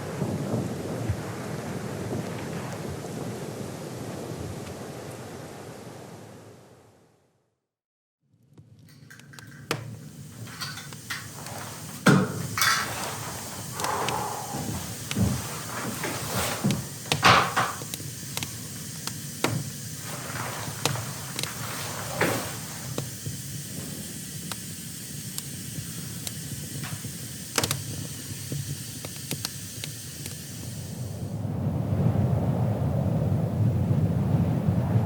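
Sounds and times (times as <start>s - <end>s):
objects knocking and clicking: 8.9s - 23.1s
short scrapes of objects: 10.4s - 17.8s.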